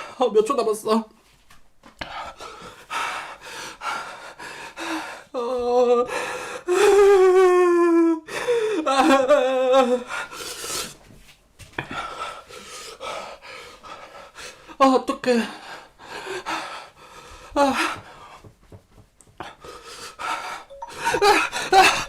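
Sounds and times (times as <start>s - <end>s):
person gasping and breathing hard: 2.0s - 11.0s, 15.4s - 18.6s, 19.3s - 22.0s.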